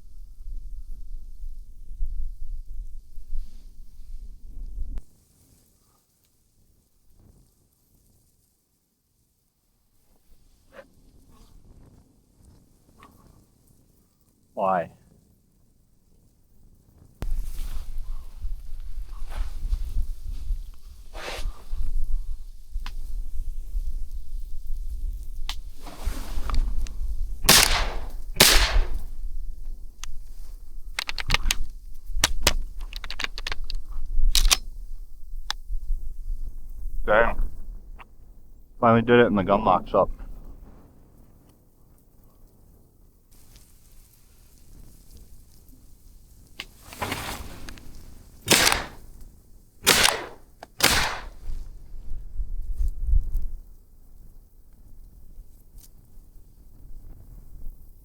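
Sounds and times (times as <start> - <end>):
wind rumble on microphone: 0.0 - 5.0, 17.2 - 38.7, 51.4 - 58.0
shotgun blasts: 27.4 - 29.2, 48.5 - 49.0, 49.8 - 51.6
metallic gun clicks and knocks: 31.0 - 31.6, 32.2 - 34.6.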